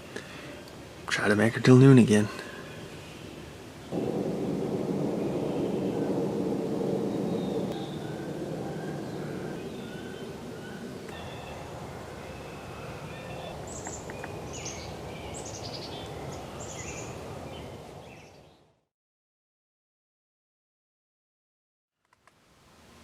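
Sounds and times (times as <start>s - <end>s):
low outdoor background noise: 0.0s - 18.8s, 22.0s - 23.0s
songbirds calling and singing: 1.9s - 18.7s.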